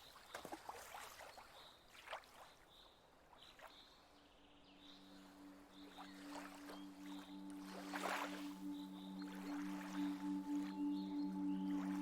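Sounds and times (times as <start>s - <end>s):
water lapping and splashing: 0.0s - 12.0s
soft sustained music tone: 4.0s - 12.0s.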